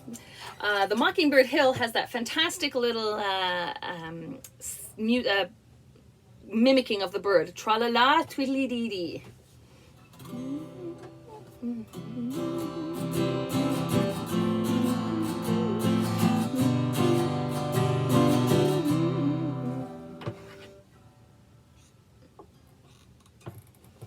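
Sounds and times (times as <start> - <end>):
acoustic guitar strumming chords: 10.1 - 21.3.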